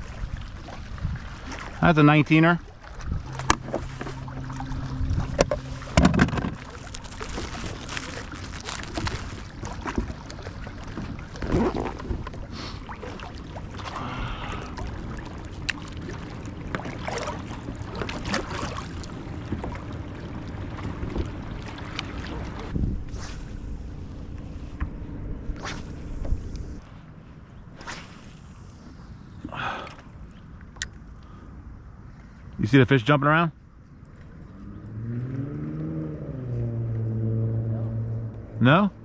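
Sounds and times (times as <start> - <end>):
wind on microphone: 0.0 - 1.8, 2.8 - 10.1, 22.6 - 26.9
water lapping: 0.0 - 24.8
low steady hum: 0.0 - 39.0.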